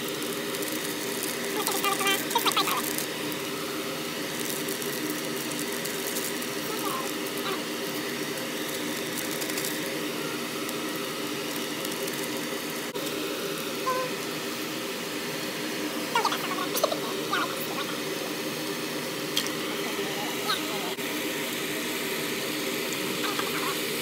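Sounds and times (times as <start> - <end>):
faint crackles: 0.0 - 14.4
mechanical hum with hiss: 0.0 - 24.0.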